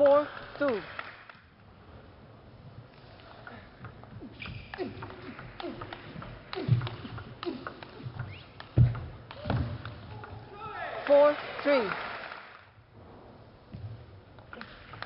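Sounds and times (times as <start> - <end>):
footwork thumps: 3.8 - 10.5, 13.6 - 15.0
shoe squeaks: 4.3 - 5.0, 8.2 - 8.6.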